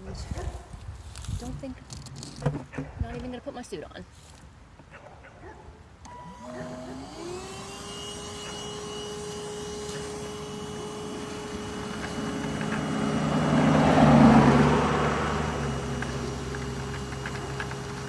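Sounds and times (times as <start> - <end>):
vacuum motor whining: 6.0 - 18.0.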